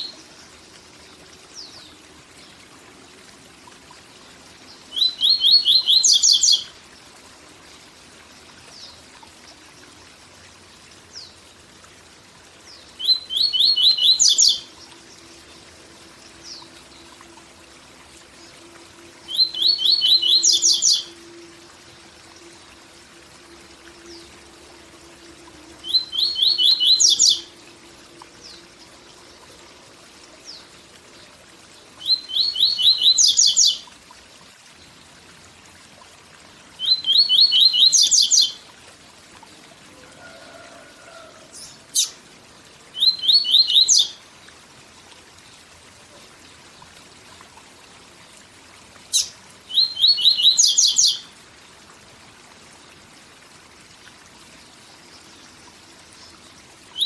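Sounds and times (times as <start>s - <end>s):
waterfall rushing: 39.9s - 42.0s.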